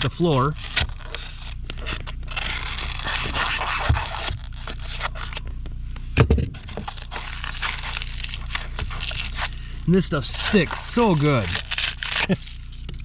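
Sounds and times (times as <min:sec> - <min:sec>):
scraping foam insulation: 0:00.0 - 0:05.4, 0:06.6 - 0:13.0.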